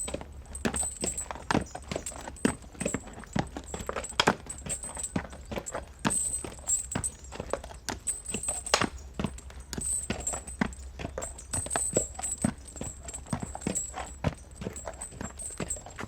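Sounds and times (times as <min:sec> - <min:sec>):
carriage rumble: 0:00.0 - 0:16.0
high jingling: 0:00.0 - 0:16.0
horse hooves clip-clopping: 0:00.0 - 0:16.0.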